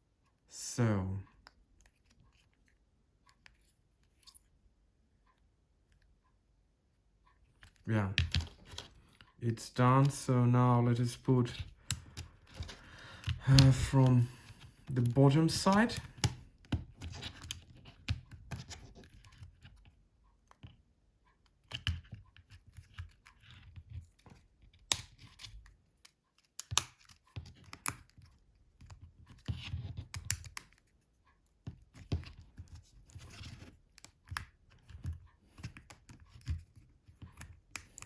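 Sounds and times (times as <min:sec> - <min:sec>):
plastic parts clicking and snapping: 0:07.6 - 0:09.4, 0:11.5 - 0:19.9, 0:21.4 - 0:30.9, 0:31.6 - 0:38.0.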